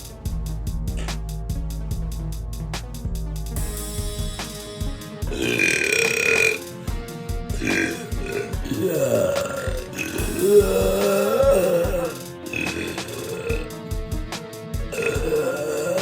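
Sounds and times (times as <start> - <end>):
background music with drum beat: 0.0 - 16.0
girl burping: 5.3 - 6.6, 7.6 - 13.7, 14.9 - 16.0.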